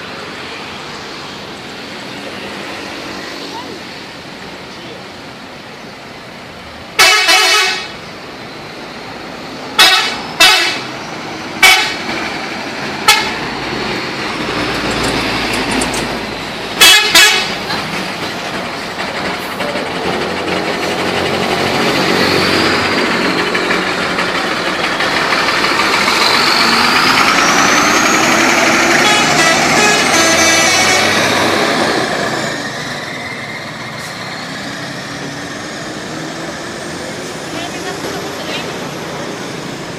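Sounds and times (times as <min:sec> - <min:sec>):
bus vehicle noise with gliding tones: 0:00.0 - 0:39.9
bus musical horn blasts: 0:07.0 - 0:08.0, 0:09.8 - 0:10.9, 0:11.6 - 0:12.1, 0:13.0 - 0:13.4, 0:16.8 - 0:17.6, 0:28.8 - 0:31.3.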